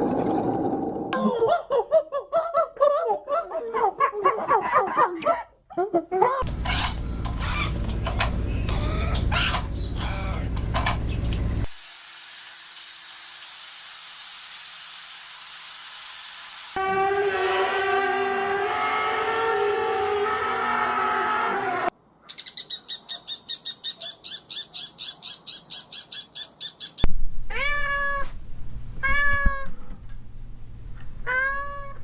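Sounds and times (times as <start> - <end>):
overlapping animal calls: 6.6 - 10.9
cat meowing: 27.5 - 28.4, 29.0 - 29.8, 31.2 - 32.0.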